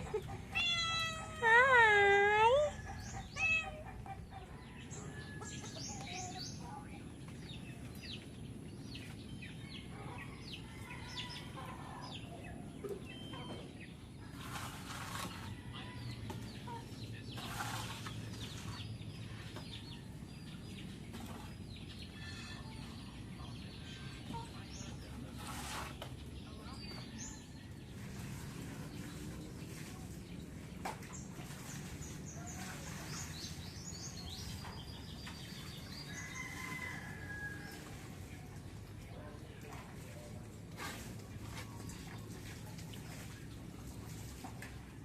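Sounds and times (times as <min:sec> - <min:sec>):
chickens clucking: 0:00.0 - 0:06.3
birds chirping: 0:00.0 - 0:40.5.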